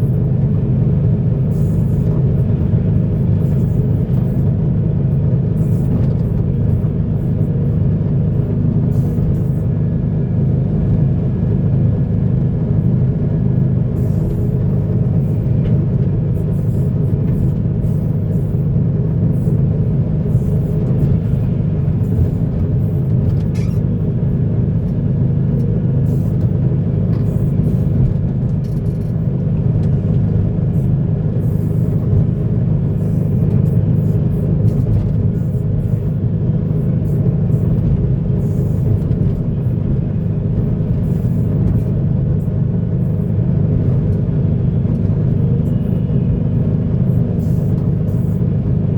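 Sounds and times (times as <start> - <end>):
diesel machinery engine rumble: 0.0 - 48.9.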